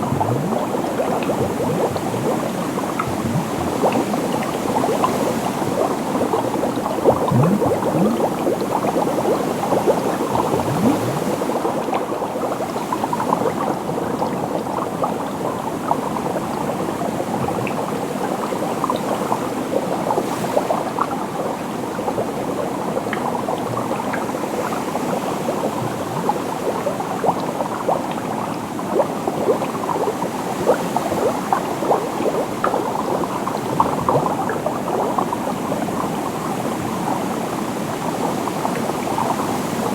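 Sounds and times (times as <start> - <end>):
rising bubble glides: 0.0 - 19.4
water bubbling and gurgling: 0.0 - 39.9.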